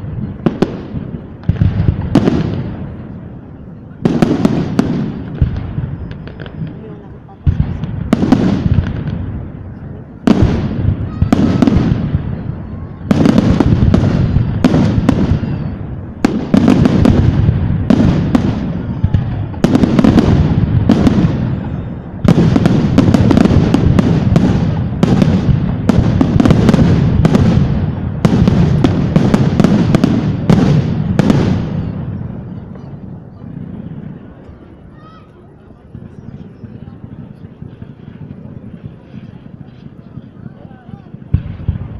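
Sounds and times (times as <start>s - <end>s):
fireworks exploding: 0.0s - 41.9s.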